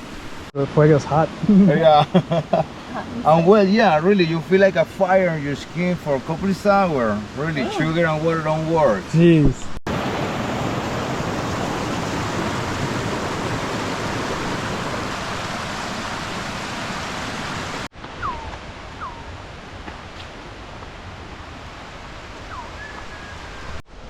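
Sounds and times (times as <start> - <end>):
rushing water: 0.0 - 24.0
bird whistles: 18.2 - 19.3, 22.5 - 23.7.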